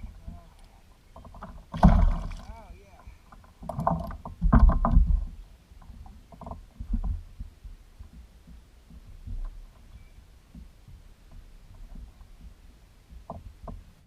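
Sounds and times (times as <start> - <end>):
dull knocks in a boat: 1.1 - 2.5, 3.6 - 9.8, 10.5 - 14.0.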